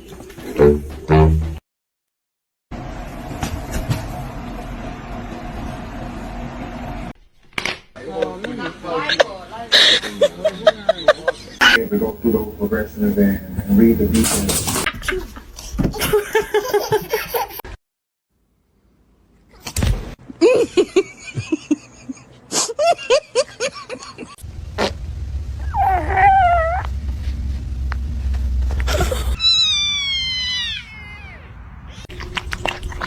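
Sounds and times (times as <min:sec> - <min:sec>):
household noise: 0:11.7 - 0:16.2, 0:32.0 - 0:33.0
cat meowing: 0:25.7 - 0:26.9, 0:29.4 - 0:31.6.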